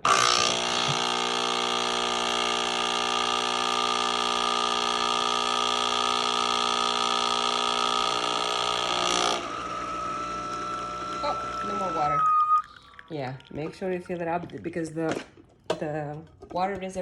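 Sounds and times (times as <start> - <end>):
espresso machine pump buzzing: 0.0 - 12.6.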